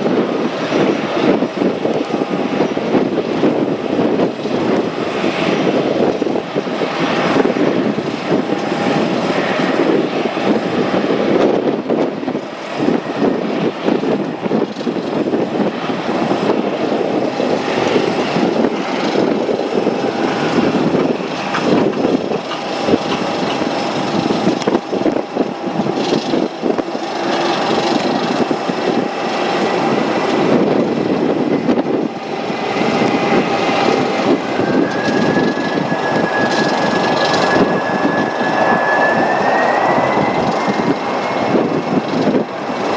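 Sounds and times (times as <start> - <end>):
jet engines running: 0.0 - 42.9
high-pitched whine: 16.7 - 42.9.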